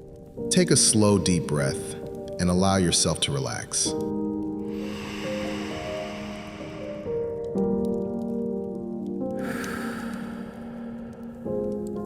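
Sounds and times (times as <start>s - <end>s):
faint fireplace crackles: 0.0s - 12.0s
soft background music chords: 0.0s - 12.0s
soft hiss: 3.4s - 12.0s.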